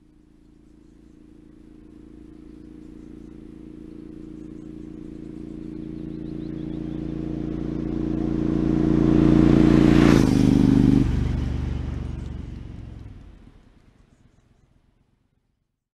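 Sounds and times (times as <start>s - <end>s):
motorcycle riding past: 1.4s - 13.9s.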